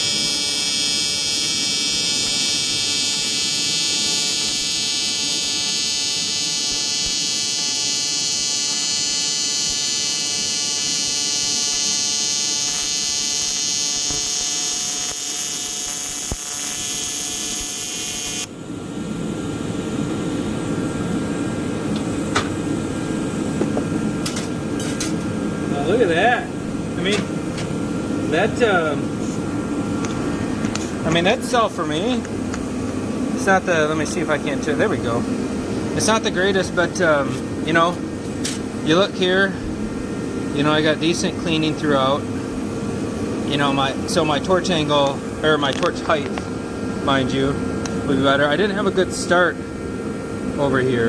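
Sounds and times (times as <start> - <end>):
welding arc buzzing: 0.0 - 50.8.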